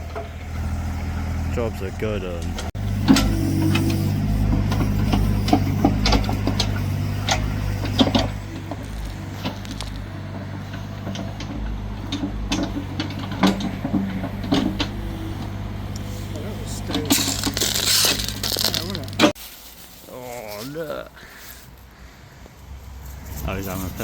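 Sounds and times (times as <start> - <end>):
machinery engine running: 0.0 - 19.4
clanks and rattles: 2.4 - 19.4.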